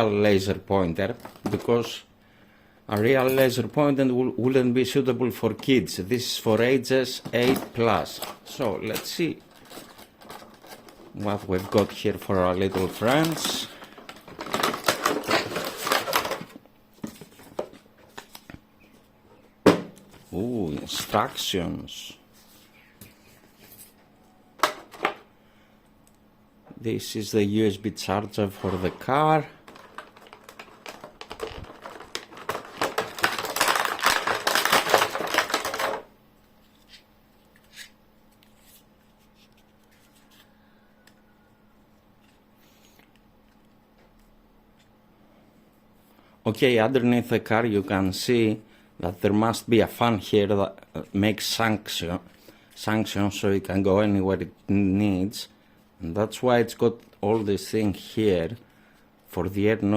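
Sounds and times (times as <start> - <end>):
packaging crackling rustles: 7.1 - 18.6, 28.3 - 37.0.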